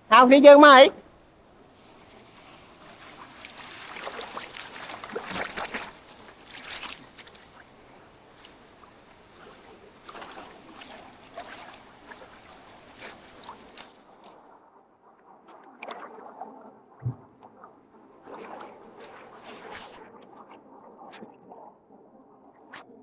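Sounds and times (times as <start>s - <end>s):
river water splashing: 1.5s - 14.3s, 18.2s - 20.0s.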